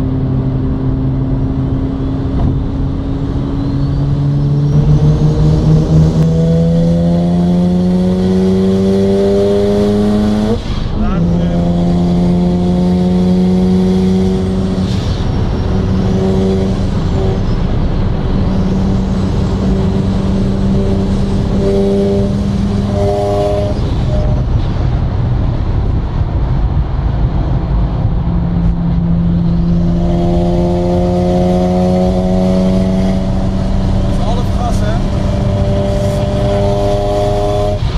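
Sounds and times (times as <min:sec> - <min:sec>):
road and wind noise: 0:00.0 - 0:37.9
rotary engine running steadily: 0:28.4 - 0:37.9.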